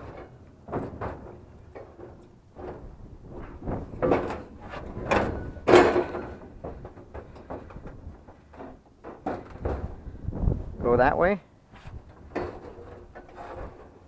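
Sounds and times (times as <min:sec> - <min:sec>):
metal knocks: 0:00.0 - 0:10.0
heavy metal scraping and clanking: 0:00.0 - 0:10.2, 0:11.8 - 0:14.0.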